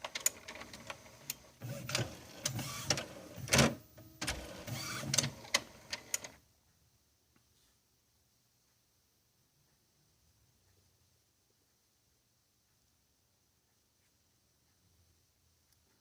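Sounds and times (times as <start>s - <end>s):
printer clicks: 0.0s - 6.4s
printer mechanism whirring: 0.0s - 6.4s
printer clunk: 0.2s - 6.3s.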